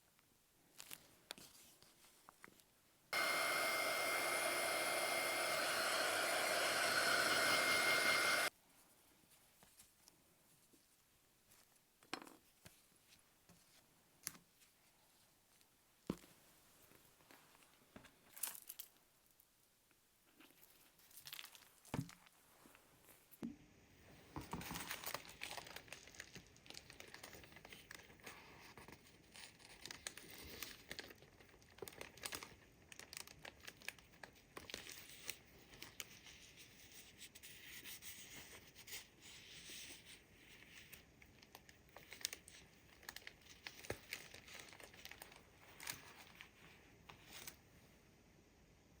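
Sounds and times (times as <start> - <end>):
paper crinkling and rustling: 20.4 - 22.7, 24.4 - 47.6.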